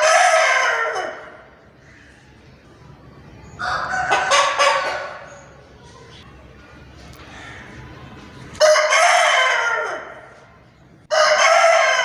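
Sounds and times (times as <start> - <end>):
chicken calling: 0.0 - 2.1, 3.5 - 5.6, 8.6 - 10.4, 11.1 - 12.0.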